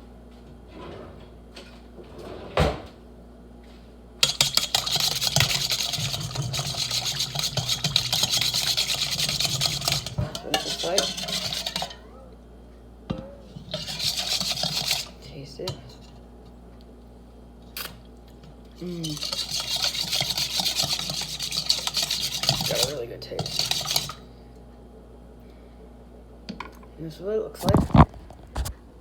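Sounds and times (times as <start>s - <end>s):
whisk clattering against bowl: 4.2s - 12.0s, 13.1s - 16.1s, 18.9s - 24.2s
whisk knocking on bowl: 4.2s - 12.0s, 13.1s - 15.9s, 19.0s - 24.2s.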